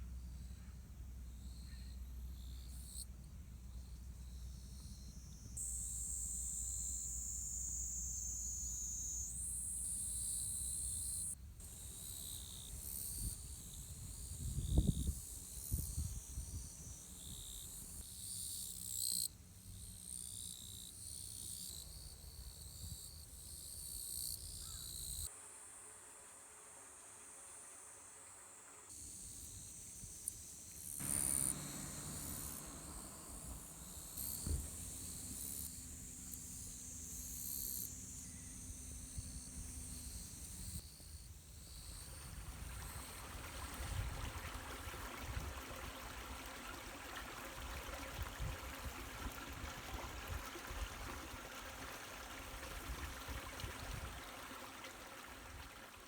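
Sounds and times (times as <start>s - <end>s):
insect chirping: 1.2s - 43.7s
thud: 31.0s - 35.4s.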